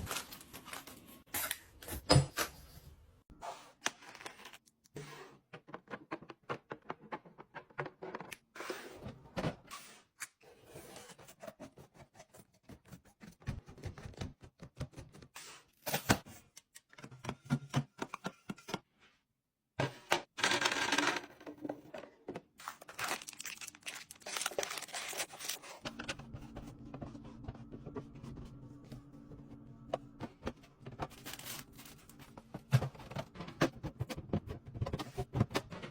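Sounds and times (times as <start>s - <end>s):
plastic wrapping crinkling and tearing: 22.7s - 25.8s.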